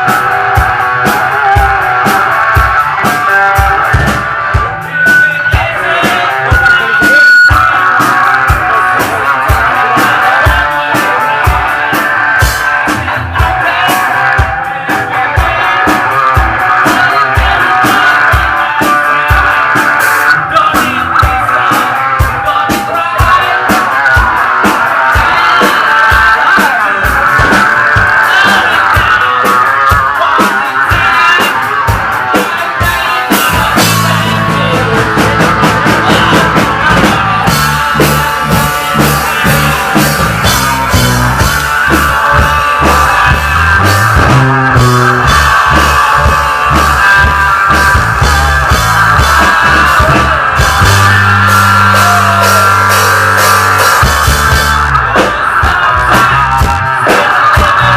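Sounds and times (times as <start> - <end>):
bass line: 0.0 - 57.9
drums: 0.0 - 57.9
guitar: 0.0 - 57.9
rock band playing live: 0.0 - 57.9.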